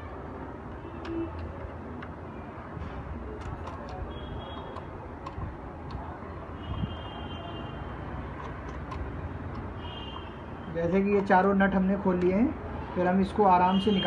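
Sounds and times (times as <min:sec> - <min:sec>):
screwdriver ticks and clicks: 0:00.7 - 0:02.2, 0:03.4 - 0:06.9, 0:08.3 - 0:12.4.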